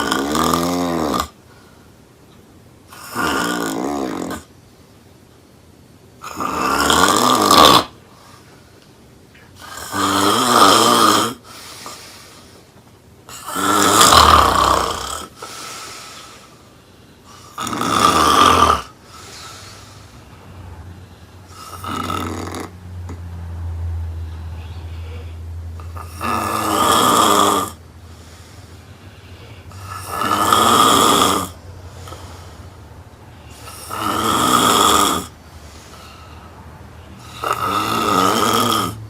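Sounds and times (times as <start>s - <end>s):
woman snoring: 0.0s - 1.4s, 2.9s - 4.5s, 6.2s - 8.0s, 9.6s - 11.5s, 13.3s - 15.5s, 17.2s - 19.9s, 21.4s - 23.1s, 24.6s - 27.8s, 29.6s - 32.4s, 33.4s - 35.4s, 37.2s - 39.0s.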